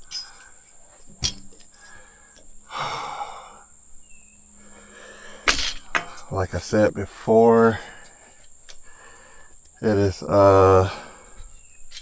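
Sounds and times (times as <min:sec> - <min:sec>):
high insect drone: 0:00.0 - 0:12.0
man's strained exhale: 0:01.8 - 0:03.7.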